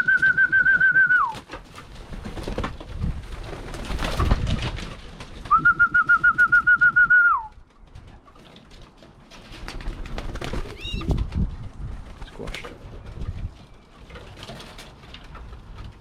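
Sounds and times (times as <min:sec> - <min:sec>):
warbling call whistle: 0:05.5 - 0:07.5.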